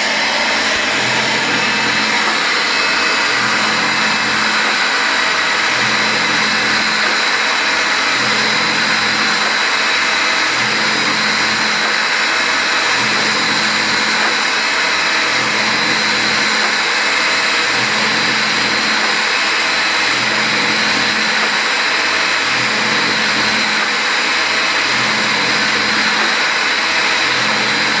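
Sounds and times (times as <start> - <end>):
low motor hum: 0.0 - 28.0.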